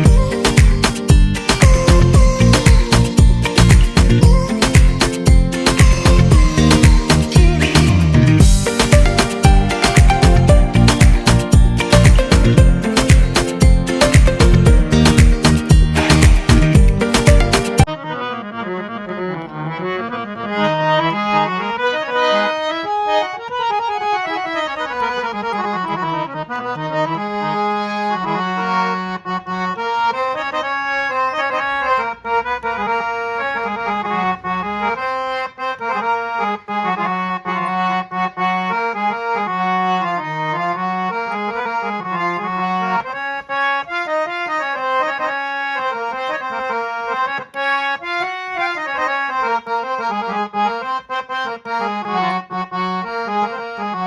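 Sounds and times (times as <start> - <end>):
harmonium melody with drone: 0.0 - 54.0.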